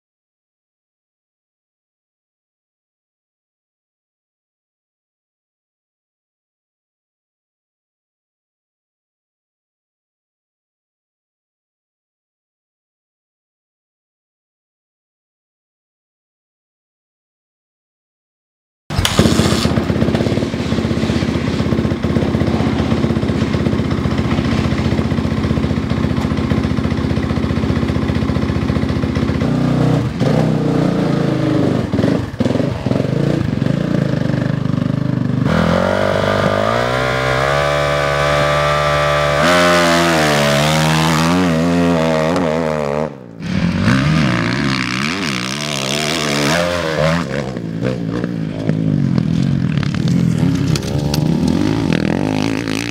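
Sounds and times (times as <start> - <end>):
motocross bike engine revving: 18.9 - 52.9.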